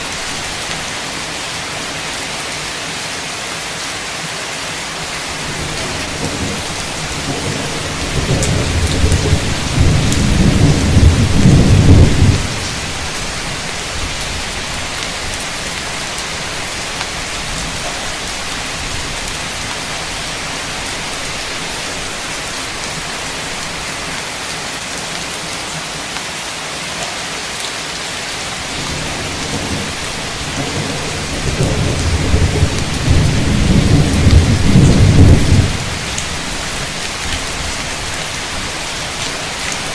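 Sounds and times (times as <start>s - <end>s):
heavy rain pouring: 0.0s - 39.9s
thunder rolling: 5.3s - 13.2s, 28.7s - 36.2s.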